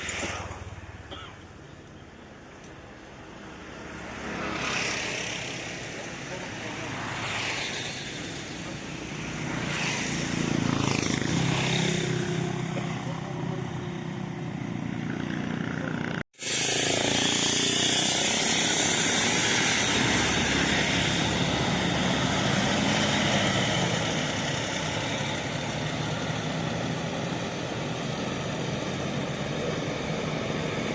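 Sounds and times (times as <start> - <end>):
heavy vehicle engine running: 11.9 - 30.9.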